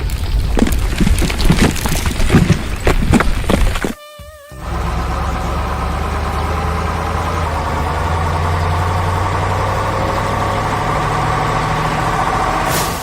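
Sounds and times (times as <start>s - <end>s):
heavy machinery engine idling: 4.6s - 13.0s.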